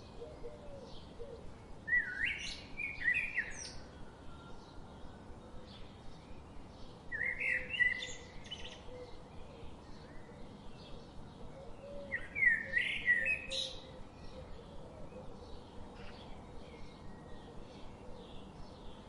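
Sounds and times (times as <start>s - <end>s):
faint bird chirps: 0.0s - 19.0s.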